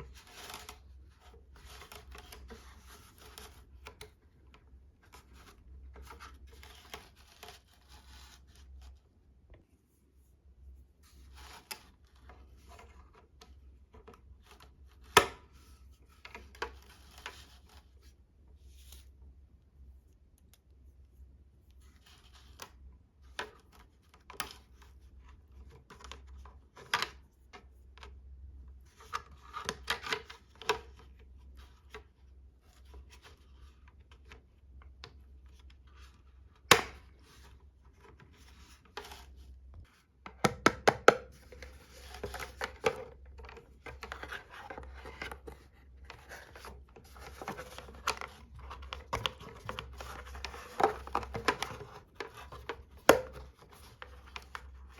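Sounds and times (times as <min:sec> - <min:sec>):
packaging rustling and scraping: 0:41.4 - 0:54.8.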